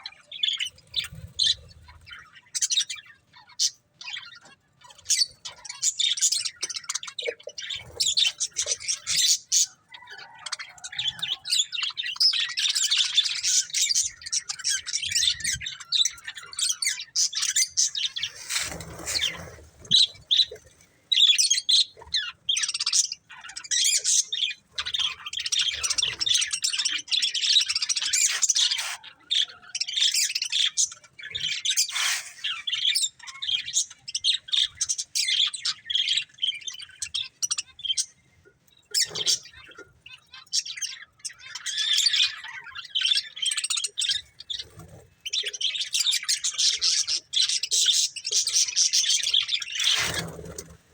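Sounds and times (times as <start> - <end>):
budgerigars chirping and warbling: 0.0 - 50.9.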